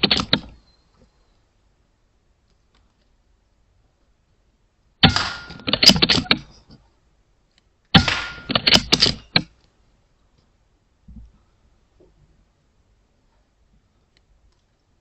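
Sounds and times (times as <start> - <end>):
sharp clicks: 0.0 - 0.6, 5.1 - 6.5, 7.5 - 9.7
air rifle shots: 5.0 - 6.5, 7.9 - 9.5.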